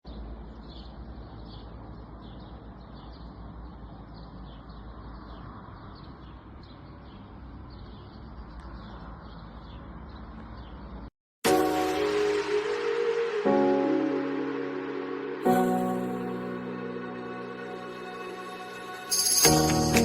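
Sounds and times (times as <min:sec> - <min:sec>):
small birds chirping: 0:00.1 - 0:11.1.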